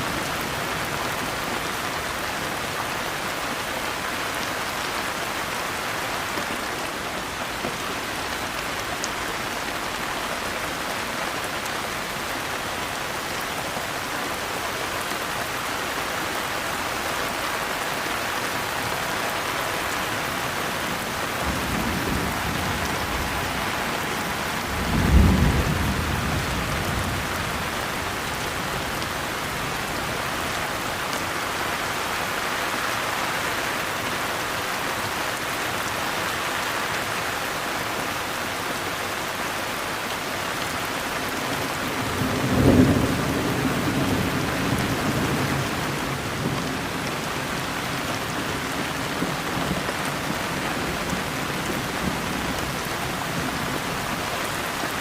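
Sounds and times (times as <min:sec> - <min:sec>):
heavy rain: 0:00.0 - 0:55.0
thunder rumbling and cracking: 0:21.4 - 0:27.8.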